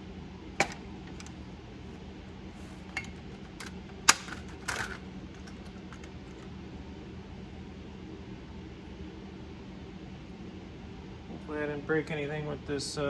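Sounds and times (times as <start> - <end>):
plastic clips popping loose: 0.6 - 1.3, 3.0 - 5.7.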